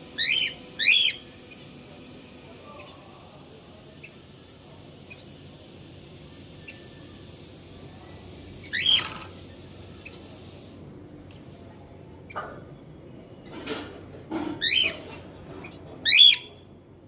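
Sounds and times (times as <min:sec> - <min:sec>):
cockatiel chirping and calling: 0:00.2 - 0:01.8, 0:06.6 - 0:07.0, 0:08.6 - 0:09.3, 0:10.0 - 0:10.3, 0:14.6 - 0:16.6.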